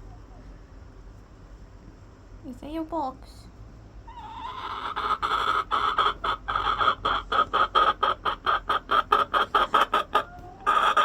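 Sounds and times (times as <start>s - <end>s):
hen squawking: 4.1s - 11.0s.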